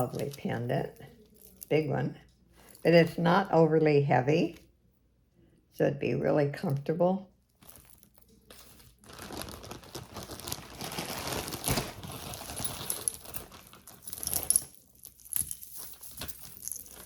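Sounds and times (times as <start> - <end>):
metal chains and beads clinking: 0.0 - 1.9, 7.6 - 17.0
bag crinkling: 7.6 - 17.0.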